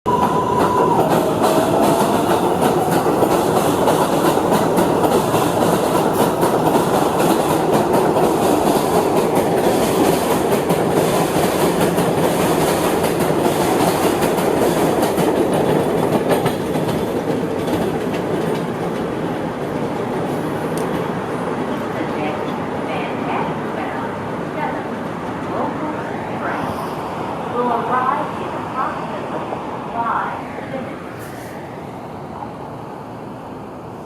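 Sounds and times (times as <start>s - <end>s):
train rumble: 0.0s - 34.0s
wheels clicking over rails: 0.1s - 21.1s.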